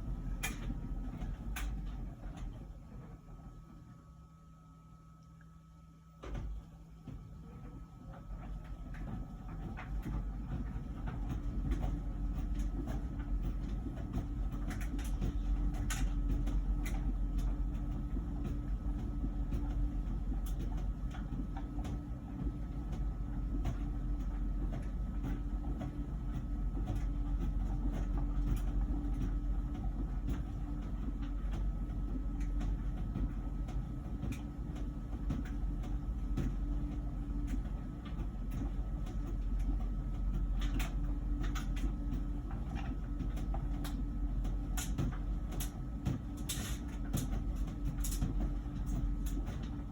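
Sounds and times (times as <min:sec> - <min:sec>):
dryer low rumble: 0:00.0 - 0:49.9
faint steady hum: 0:00.0 - 0:49.9.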